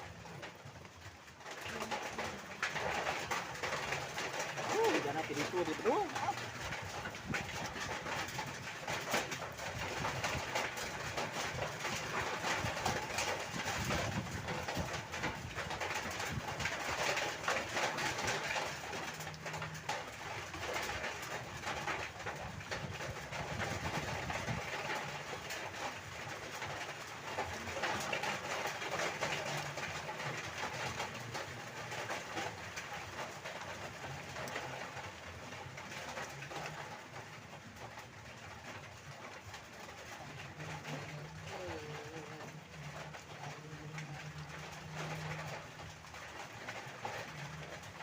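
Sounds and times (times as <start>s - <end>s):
wind rumbling on microphone: 0.0s - 26.8s
heavy rain falling: 0.0s - 48.0s.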